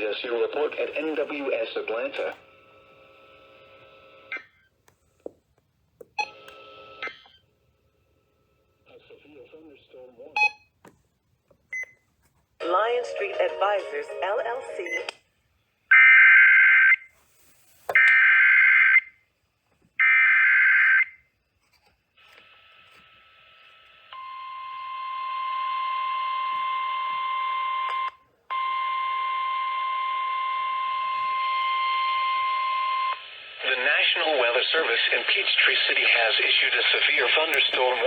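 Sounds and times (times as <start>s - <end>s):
radio hiss: 0.0s - 2.4s, 33.2s - 38.0s.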